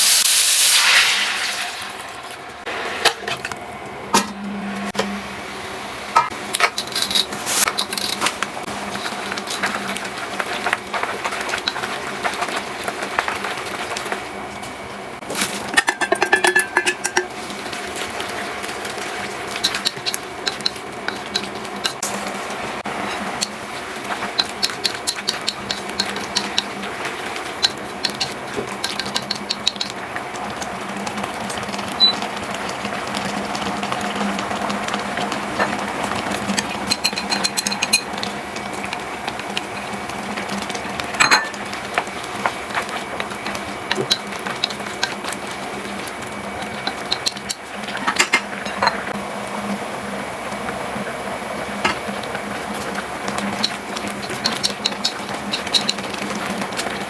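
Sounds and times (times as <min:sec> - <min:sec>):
utensils clinking against dishes: 0:15.4 - 0:17.4, 0:19.5 - 0:22.1, 0:27.6 - 0:30.0, 0:36.5 - 0:38.3, 0:41.1 - 0:41.7, 0:46.6 - 0:49.1, 0:53.3 - 0:57.0.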